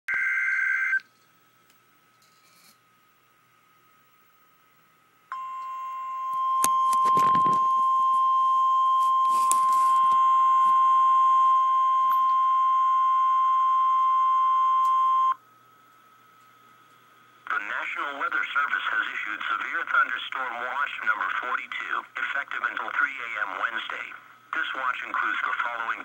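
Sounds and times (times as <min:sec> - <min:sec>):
long high warning beep: 0:05.3 - 0:15.4.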